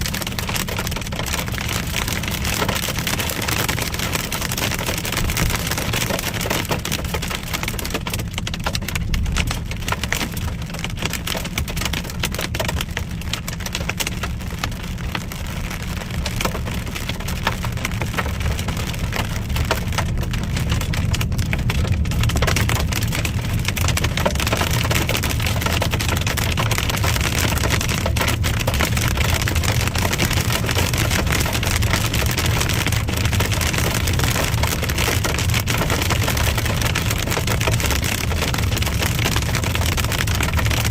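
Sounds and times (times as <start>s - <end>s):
hail and rain on car roof: 0.0s - 40.9s
road and engine rumble: 0.0s - 40.9s.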